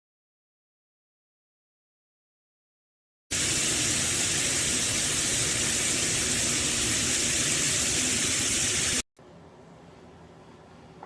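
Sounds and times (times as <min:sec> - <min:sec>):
shower head spraying water: 0:03.3 - 0:09.1.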